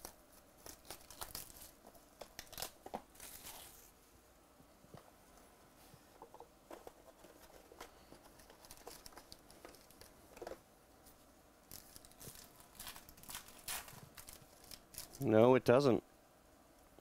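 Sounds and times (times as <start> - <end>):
trading cards and wrappers rustling: 0.0 - 4.0, 6.2 - 15.3.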